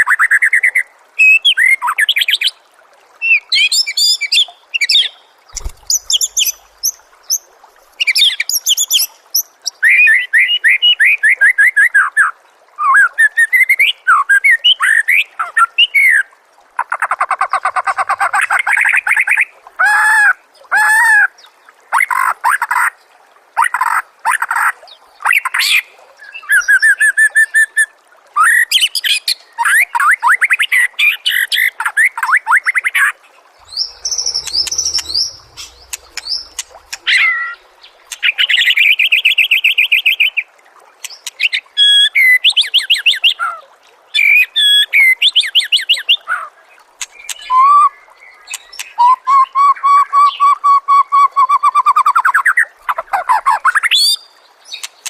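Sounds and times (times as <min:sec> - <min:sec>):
songbird singing varied song: 0:05.0 - 0:07.0, 0:33.6 - 0:37.6.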